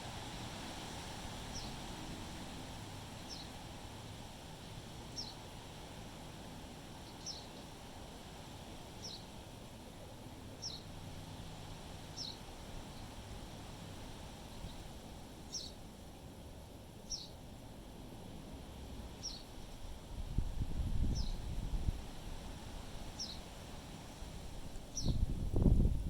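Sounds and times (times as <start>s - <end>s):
bird chirping: 12.2s - 12.4s, 15.5s - 15.8s, 17.1s - 17.4s.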